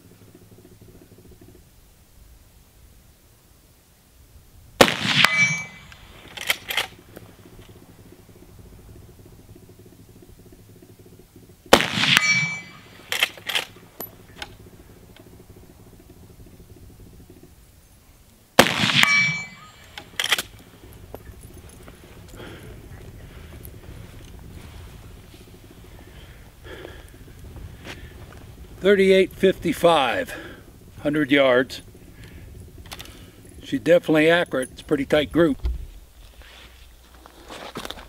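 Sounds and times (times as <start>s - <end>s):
rifle shots echoing: 4.8s - 8.5s, 11.6s - 15.4s, 18.6s - 21.2s
short metallic clicks: 5.1s - 7.8s, 12.0s - 14.5s, 18.7s - 20.7s.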